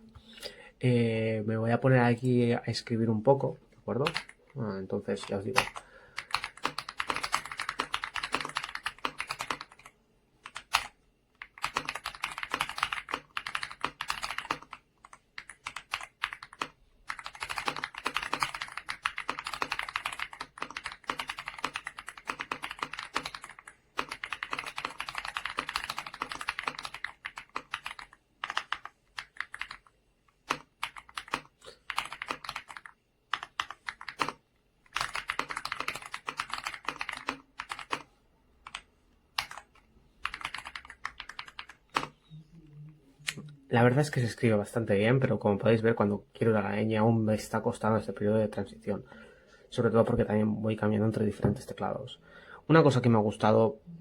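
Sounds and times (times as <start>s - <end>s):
mechanical keyboard typing: 4.0s - 4.4s, 5.2s - 42.2s.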